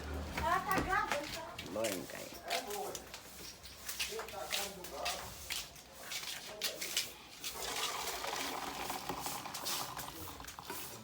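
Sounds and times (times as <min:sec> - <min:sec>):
liquid pouring through strainer: 0:07.6 - 0:11.0.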